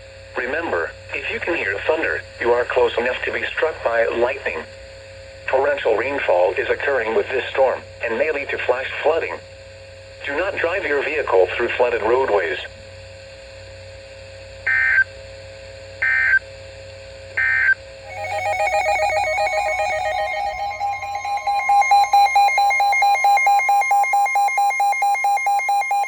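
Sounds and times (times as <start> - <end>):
data tone bursts: 18.1 - 26.0
pulsing two-tone alert signal: 18.1 - 26.0.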